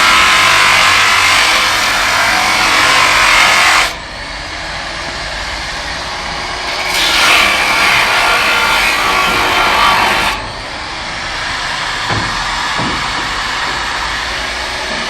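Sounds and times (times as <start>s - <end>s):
angle grinder cutting pipe: 0.0s - 4.0s, 6.6s - 10.9s.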